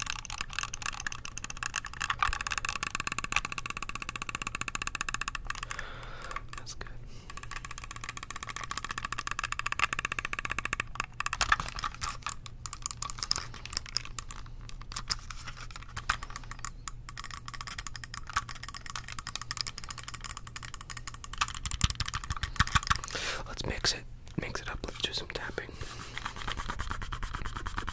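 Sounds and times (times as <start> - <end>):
computer mouse buttons clicking: 0.0 - 6.7, 7.3 - 15.2, 15.8 - 23.0.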